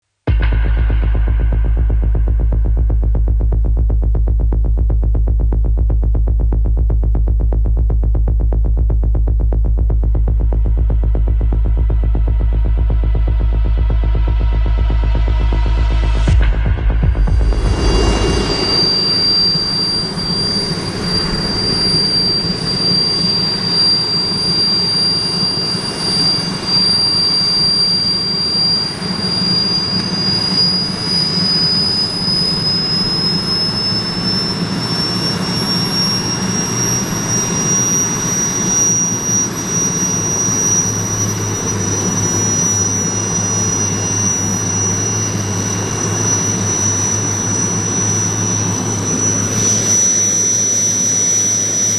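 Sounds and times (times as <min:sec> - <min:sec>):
low rumble: 0:00.3 - 0:43.3
helicopter turbine engine whine: 0:17.0 - 0:51.9.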